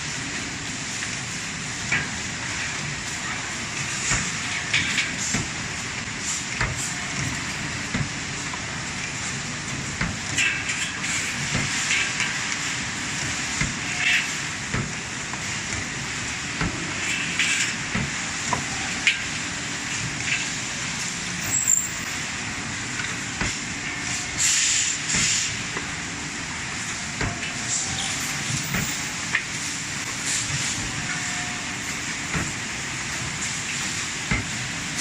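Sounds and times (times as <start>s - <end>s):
steady machine hiss: 10.3s - 31.0s
short hissing bursts: 24.4s - 25.6s.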